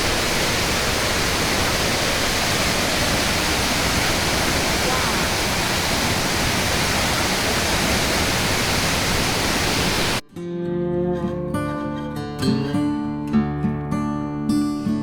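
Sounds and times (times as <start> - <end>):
waterfall roar: 0.0 - 10.2
acoustic guitar music: 10.2 - 15.0.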